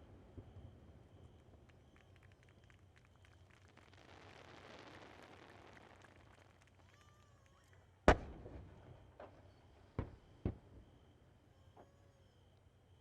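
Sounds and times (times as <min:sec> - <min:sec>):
fireworks booming with echo: 0:08.1 - 0:09.4.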